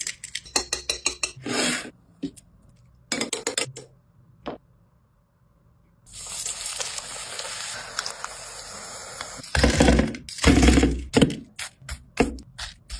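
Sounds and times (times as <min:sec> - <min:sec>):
hot oil sizzling: 0:06.1 - 0:09.5.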